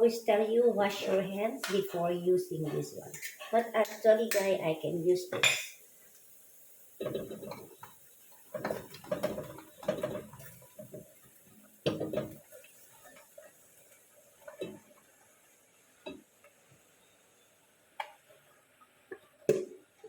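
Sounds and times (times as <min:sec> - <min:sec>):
kitchen utensils and dishes clattering: 0:02.7 - 0:04.6, 0:05.3 - 0:05.8, 0:07.0 - 0:11.2, 0:11.8 - 0:13.4.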